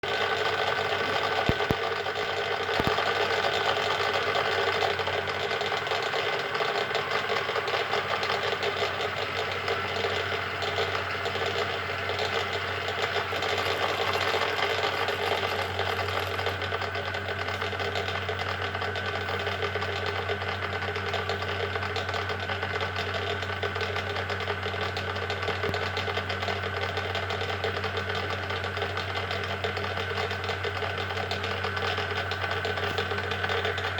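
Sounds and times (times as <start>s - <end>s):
lathe gears rattling: 0.0s - 19.7s.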